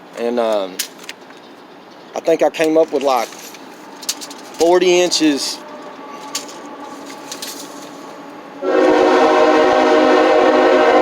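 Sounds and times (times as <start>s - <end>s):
loud horn chord: 8.1s - 11.0s.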